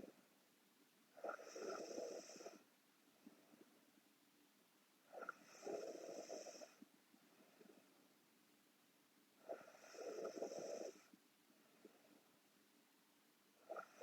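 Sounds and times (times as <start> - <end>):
woman snoring: 1.2 - 2.6, 5.2 - 6.8, 9.5 - 11.1.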